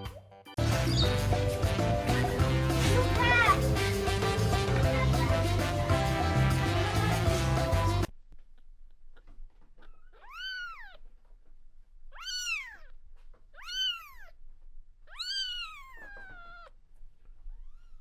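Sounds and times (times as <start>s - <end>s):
cat meowing: 9.8s - 11.1s, 12.1s - 14.4s, 15.1s - 16.8s, 17.4s - 18.0s.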